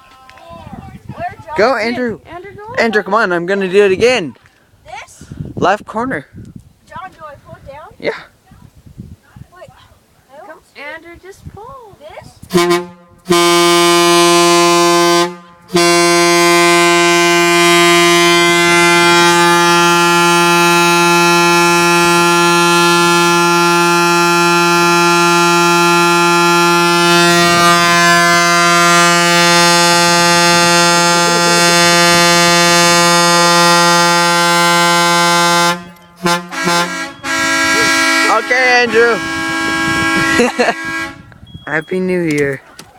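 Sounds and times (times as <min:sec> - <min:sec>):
truck air horn blast: 0:12.5 - 0:41.3.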